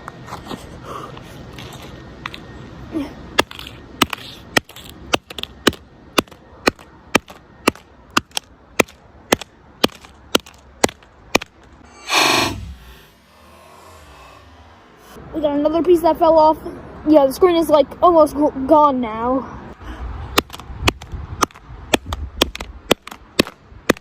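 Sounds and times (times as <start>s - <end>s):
noisy burst falling in pitch: 11.8s - 15.4s.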